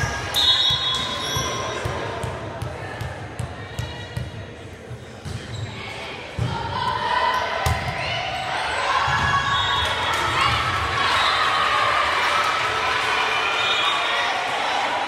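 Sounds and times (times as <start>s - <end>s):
volleyball being hit and bouncing: 7.6s - 8.1s.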